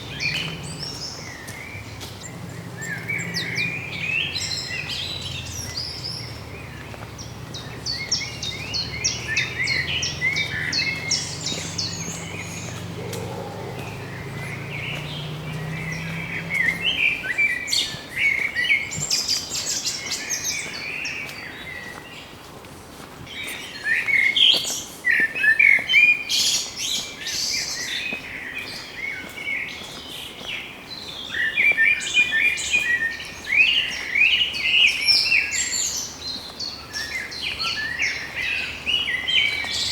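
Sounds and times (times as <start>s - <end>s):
birds chirping and trilling: 0.0s - 20.7s.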